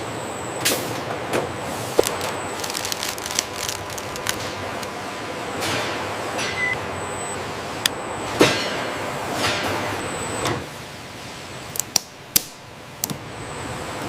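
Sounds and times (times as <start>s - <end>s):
sharp clicks and knocks: 2.0s - 4.9s.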